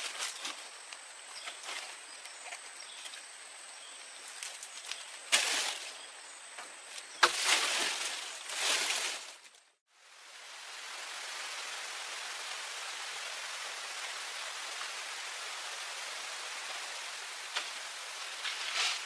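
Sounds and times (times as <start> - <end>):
rustling or scraping bursts: 7.2 - 9.7, 12.6 - 19.0.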